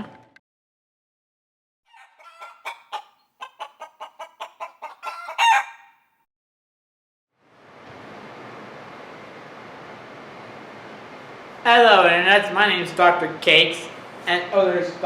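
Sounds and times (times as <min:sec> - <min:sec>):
chicken clucking: 0:01.9 - 0:05.9
chicken squawk: 0:01.9 - 0:06.0.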